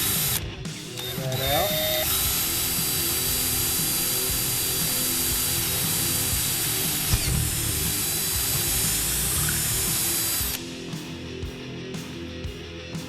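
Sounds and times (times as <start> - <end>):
electric drill running: 0.0 - 0.4, 1.0 - 10.6.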